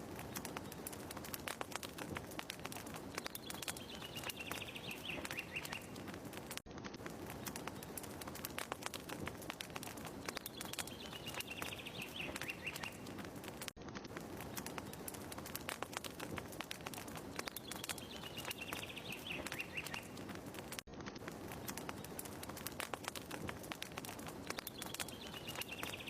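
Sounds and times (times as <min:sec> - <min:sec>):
fireplace crackling and popping: 0:00.0 - 0:26.0
bird chirping trill: 0:03.2 - 0:06.0, 0:10.3 - 0:13.0, 0:17.4 - 0:20.2, 0:24.5 - 0:26.0.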